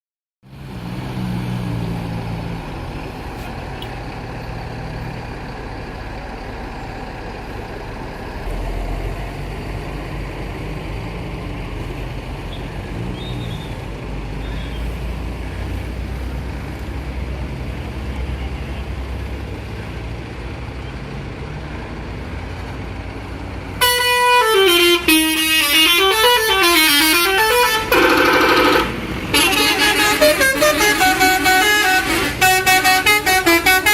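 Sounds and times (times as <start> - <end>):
engine and traffic rumble: 0.4 - 33.9
bus musical horn: 23.8 - 33.9.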